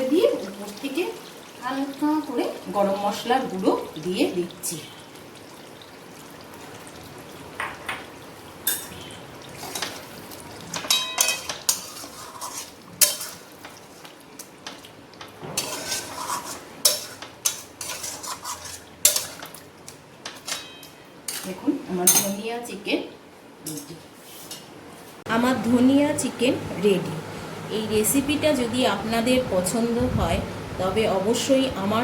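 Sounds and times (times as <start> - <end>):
metal utensil scraping cooking pan: 8.6 - 14.0, 15.4 - 19.6, 20.3 - 22.4.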